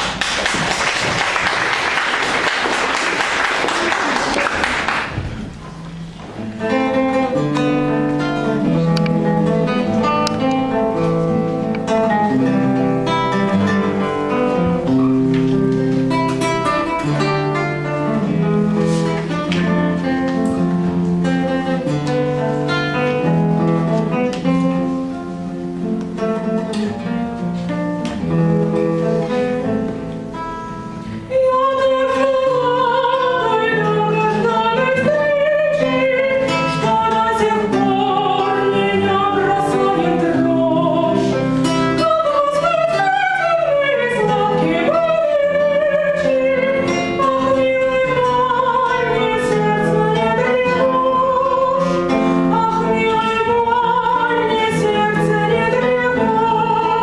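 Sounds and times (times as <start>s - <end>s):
acoustic guitar playing: 0.0s - 57.0s
woman singing: 31.2s - 57.0s.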